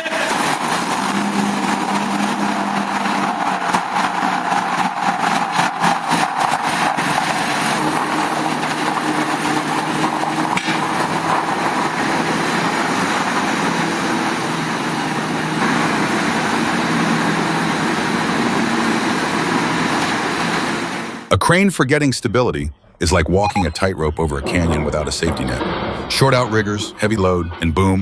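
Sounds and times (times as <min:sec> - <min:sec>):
truck diesel engine running: 0:00.3 - 0:20.4.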